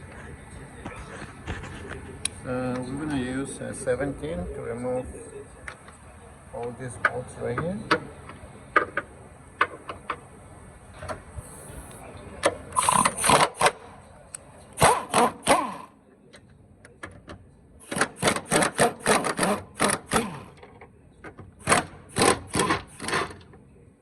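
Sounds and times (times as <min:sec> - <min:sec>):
ratchet clicking: 0:12.8 - 0:13.7.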